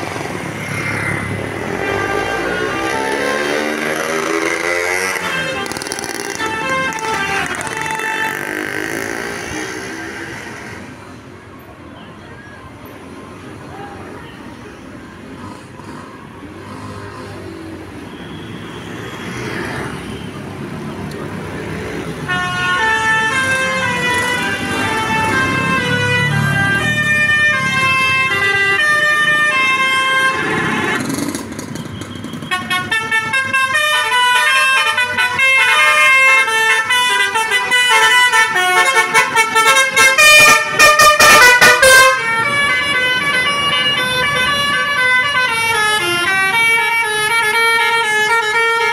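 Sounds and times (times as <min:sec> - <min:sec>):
rising vehicle noise: 0:00.0 - 0:48.9
multi-tone bus horn tune: 0:01.6 - 0:09.1, 0:22.2 - 0:31.2, 0:32.5 - 0:48.9.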